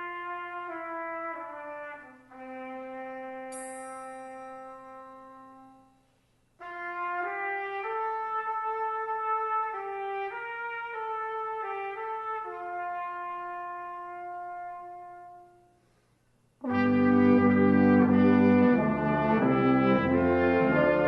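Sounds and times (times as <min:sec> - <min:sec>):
brass ensemble playing: 0:00.0 - 0:05.9, 0:06.6 - 0:15.6, 0:16.6 - 0:21.0
slow solo brass melody: 0:00.0 - 0:06.0, 0:06.6 - 0:15.8, 0:16.6 - 0:21.0.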